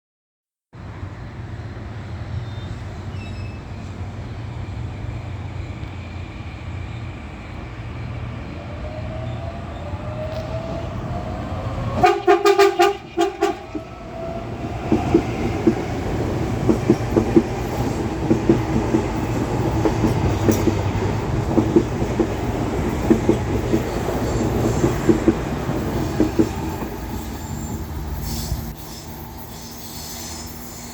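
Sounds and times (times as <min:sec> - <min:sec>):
train traction motors whining: 0:02.6 - 0:30.9
train horn: 0:11.9 - 0:14.0
wheels clattering over rail joints: 0:11.9 - 0:30.9.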